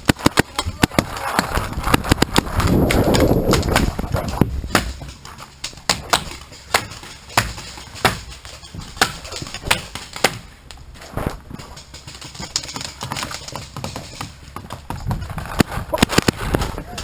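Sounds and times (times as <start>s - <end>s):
paintball markers firing: 0.0s - 10.5s.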